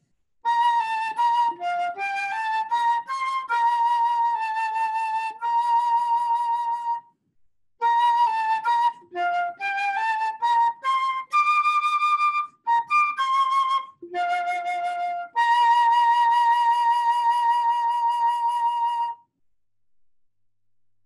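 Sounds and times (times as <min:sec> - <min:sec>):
solo melody instrument playing hymn: 0:07.8 - 0:19.2.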